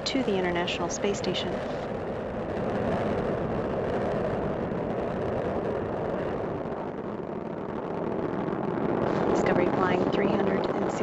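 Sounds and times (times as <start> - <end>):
rocket engines roaring: 0.0 - 11.0.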